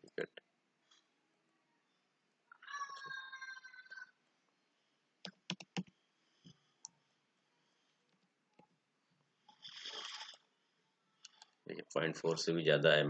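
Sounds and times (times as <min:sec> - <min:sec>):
computer mouse clicks: 0:05.2 - 0:07.0.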